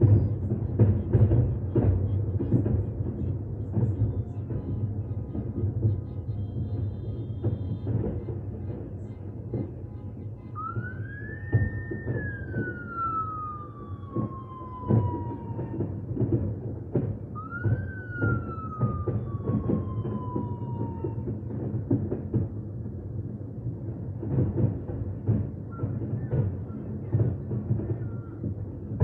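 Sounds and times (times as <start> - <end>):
fireworks banging: 0.0 - 29.0
firework whistle: 6.5 - 16.4, 17.3 - 21.4, 25.6 - 26.9.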